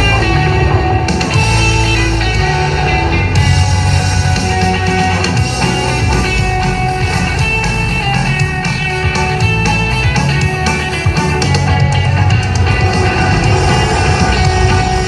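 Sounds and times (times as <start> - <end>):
guitar-like sound: 0.0 - 15.0
loud show music: 0.0 - 15.0.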